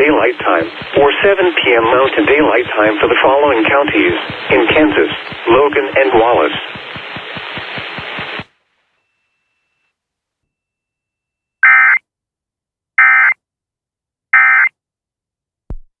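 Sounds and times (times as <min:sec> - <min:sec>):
radio hiss: 0:00.0 - 0:08.5.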